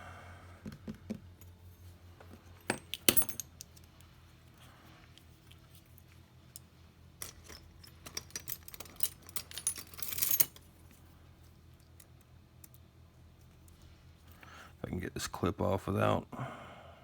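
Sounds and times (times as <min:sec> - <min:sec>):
lock parts and tools clinking: 0:02.3 - 0:04.1, 0:05.1 - 0:11.0.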